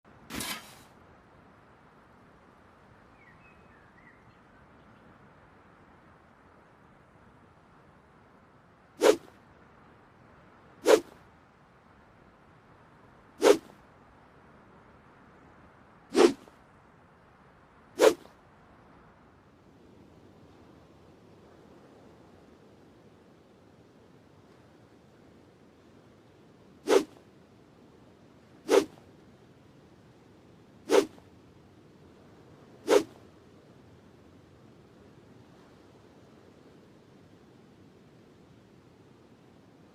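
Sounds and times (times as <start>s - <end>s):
sword swooshing through air: 0.3s - 0.9s, 9.0s - 9.4s, 10.8s - 11.2s, 13.4s - 13.8s, 16.1s - 16.5s, 18.0s - 18.3s, 26.9s - 27.2s, 28.7s - 29.0s, 30.9s - 31.2s, 32.8s - 33.2s.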